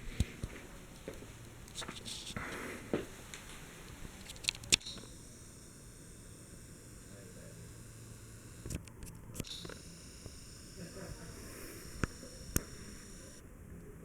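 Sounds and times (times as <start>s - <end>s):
ceiling fan motor hum: 0.0s - 14.0s
sharp clicks: 4.0s - 13.4s.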